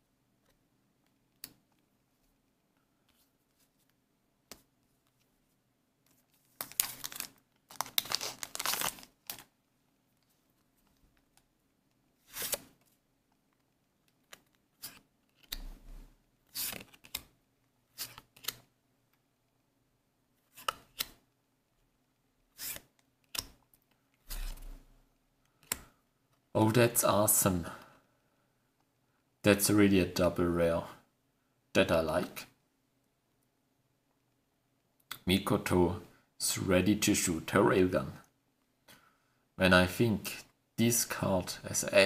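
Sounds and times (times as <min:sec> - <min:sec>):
cards rustling and clicking: 0:06.1 - 0:09.5, 0:12.3 - 0:15.8, 0:16.5 - 0:18.7, 0:20.5 - 0:21.2
wrapper tearing and crinkling: 0:06.6 - 0:09.5.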